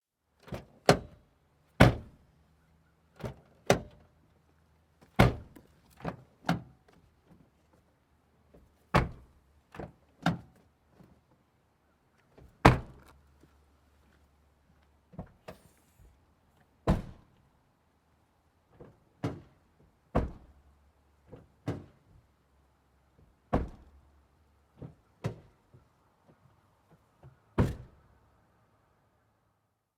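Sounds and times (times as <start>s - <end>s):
car doors slamming: 16.9s - 17.2s.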